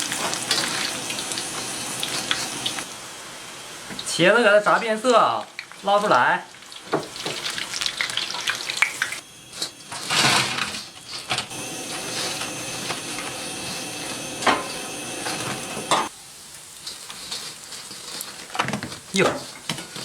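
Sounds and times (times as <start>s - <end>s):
hot oil hissing in a wok: 0.0s - 20.0s.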